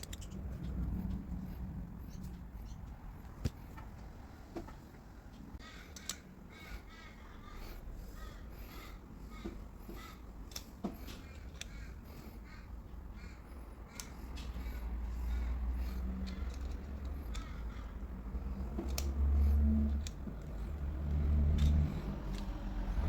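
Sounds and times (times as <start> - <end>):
light clicks and taps: 0.0 - 6.2, 9.4 - 11.9, 13.7 - 23.0
crow cawing: 5.6 - 10.3, 11.5 - 14.1, 17.3 - 18.2.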